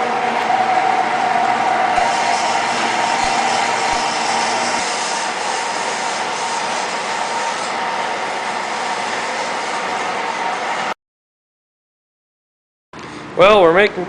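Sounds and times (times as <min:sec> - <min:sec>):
bandsaw cutting steel tubing: 0:00.3 - 0:11.0.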